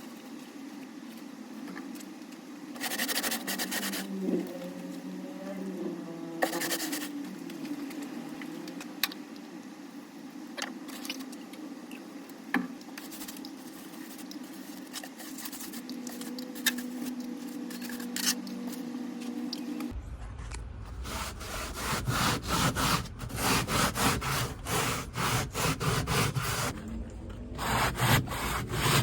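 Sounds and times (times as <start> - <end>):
steady low hum: 3.6 - 29.0
scratchy rustles: 13.0 - 18.9.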